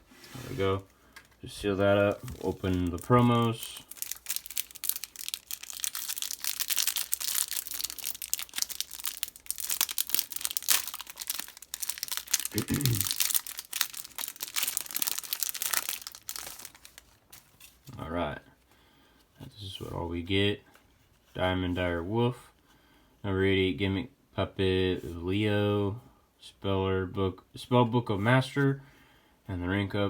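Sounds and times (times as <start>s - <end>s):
plastic wrapping crinkling and tearing: 1.1s - 18.0s.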